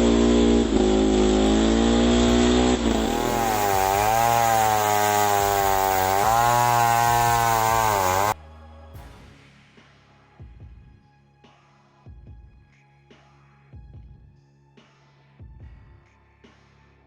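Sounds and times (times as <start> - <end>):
chainsaw engine running hard: 0.0 - 8.4.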